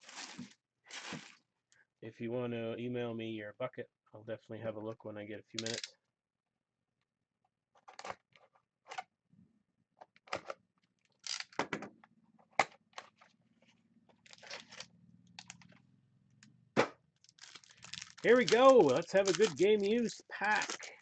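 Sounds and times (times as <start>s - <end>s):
wrapper crinkling: 0.0s - 1.4s, 14.2s - 14.8s, 17.2s - 21.0s.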